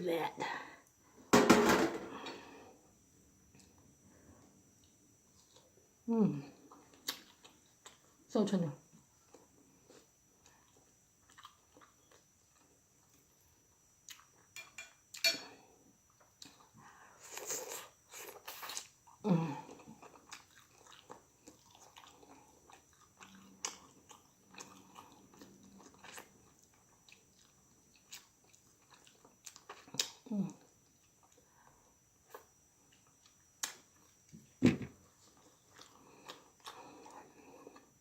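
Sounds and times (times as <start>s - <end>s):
person chewing food: 6.6s - 8.2s, 9.2s - 13.3s, 14.0s - 15.3s, 16.1s - 34.4s, 35.0s - 38.0s.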